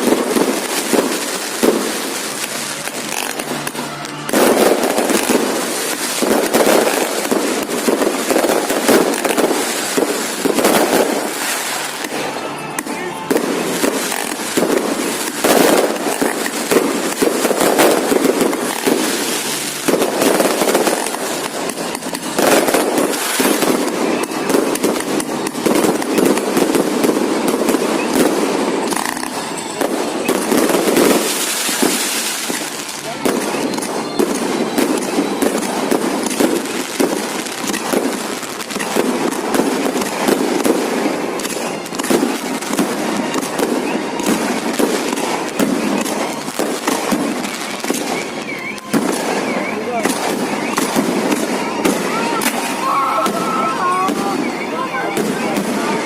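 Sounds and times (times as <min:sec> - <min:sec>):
fireworks bangs and crackling: 0:00.0 - 0:56.0.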